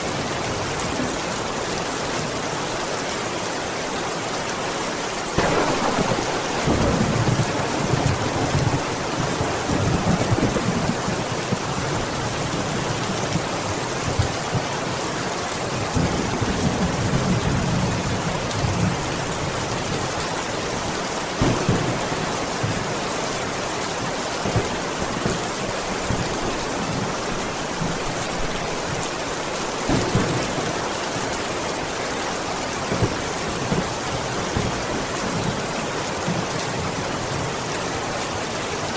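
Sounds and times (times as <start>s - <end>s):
heavy rain hissing: 0.0s - 38.9s
thunder rumbling: 5.4s - 13.5s, 21.4s - 32.0s.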